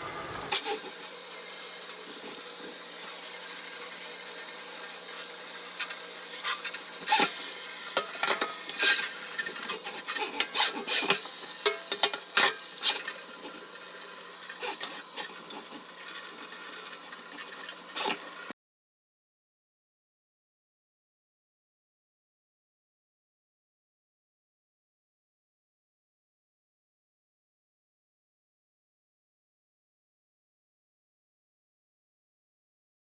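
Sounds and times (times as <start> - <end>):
watery hiss: 0.0 - 0.6.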